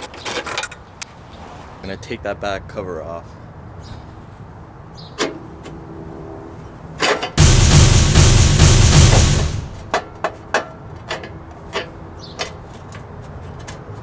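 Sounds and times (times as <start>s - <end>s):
loud rushing noise: 7.4s - 9.9s.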